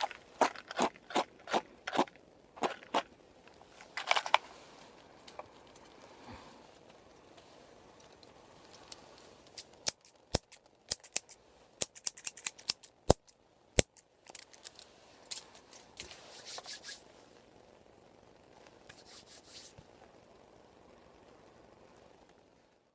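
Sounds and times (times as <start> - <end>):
soft rustling strokes: 0.0 - 10.2, 14.5 - 17.8, 18.4 - 20.5
scissors snipping hair: 9.6 - 13.2.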